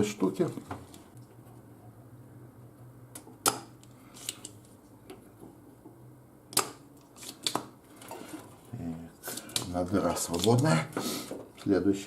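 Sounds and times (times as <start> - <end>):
desoldering pump snaps: 6.5 - 7.7.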